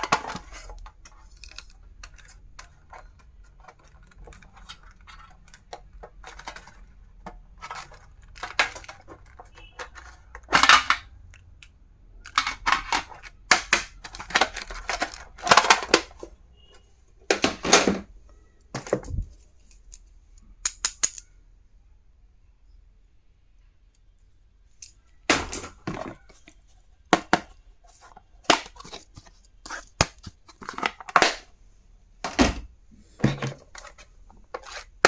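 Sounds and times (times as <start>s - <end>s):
plastic packaging clicks and taps: 1.4s - 16.2s.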